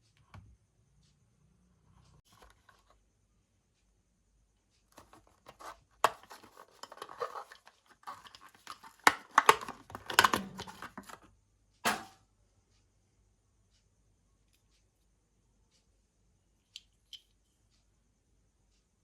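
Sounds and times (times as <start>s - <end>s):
plastic crinkling: 5.0s - 11.2s.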